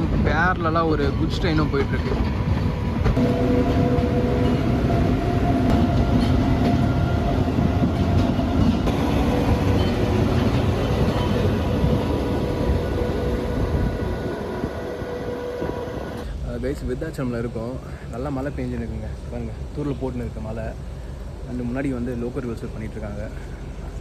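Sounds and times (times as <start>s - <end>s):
train coaches rumbling on track: 0.0s - 24.0s.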